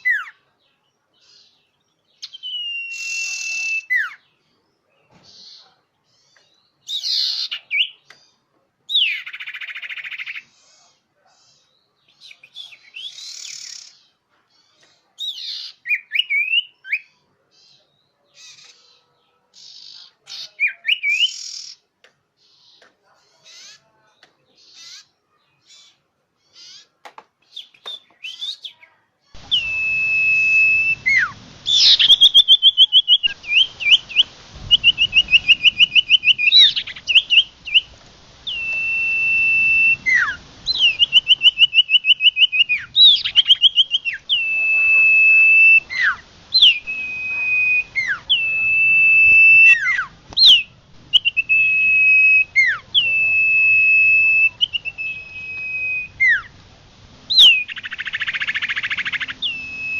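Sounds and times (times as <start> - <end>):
bird whistling song: 0.0 - 0.4, 2.1 - 4.3, 6.8 - 8.1, 8.9 - 10.5, 12.2 - 14.0, 15.2 - 17.2, 19.6 - 21.8, 27.5 - 28.8, 29.4 - 56.6, 57.3 - 59.9
rapid bird trills: 29.4 - 53.2, 57.3 - 59.9.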